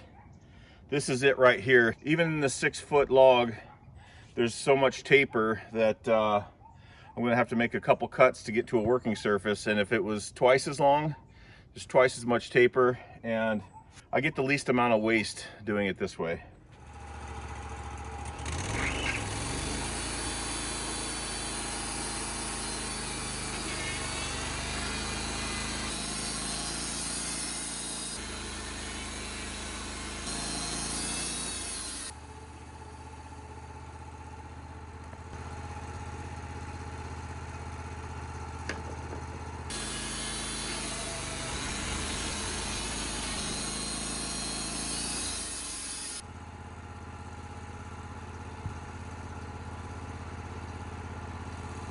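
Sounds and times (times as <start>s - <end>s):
sawmill engine humming: 16.7s - 51.9s.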